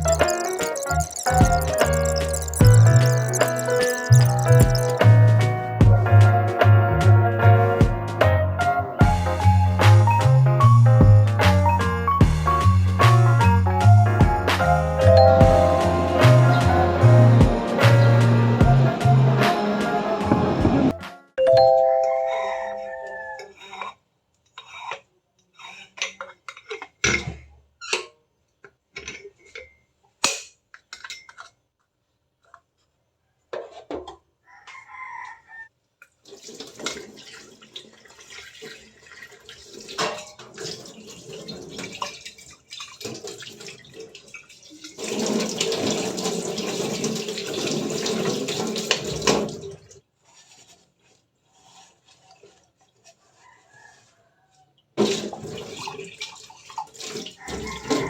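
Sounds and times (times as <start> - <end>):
water running from a tap: 0.0 - 6.0, 36.3 - 49.9
rooster crowing faintly: 22.1 - 23.8, 34.4 - 35.8, 53.3 - 54.8, 57.4 - 58.0.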